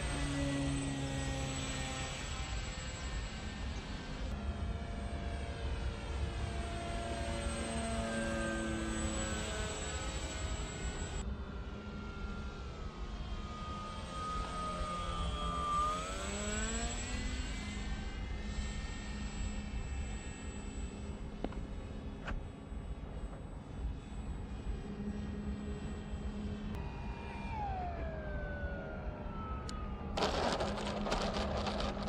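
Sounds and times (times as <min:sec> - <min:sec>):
model plane motor droning: 0:00.0 - 0:32.0
steady low rumble: 0:29.6 - 0:32.0.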